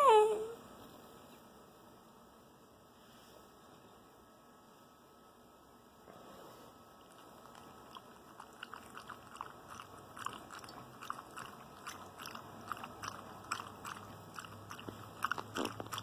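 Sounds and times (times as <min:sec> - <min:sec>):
dog chewing with crunchy clicks: 0:07.1 - 0:16.0.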